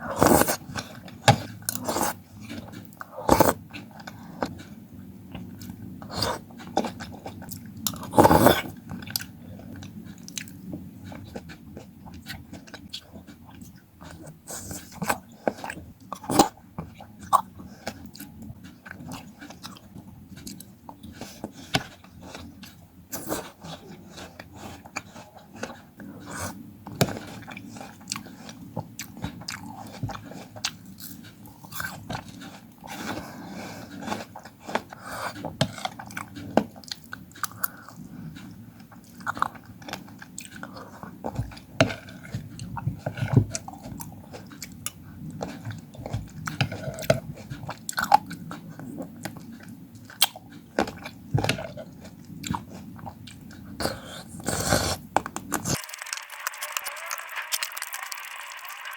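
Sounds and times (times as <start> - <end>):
crunchy fruit chewing: 0.0 - 55.8
wet mouth sounds: 52.4 - 58.9.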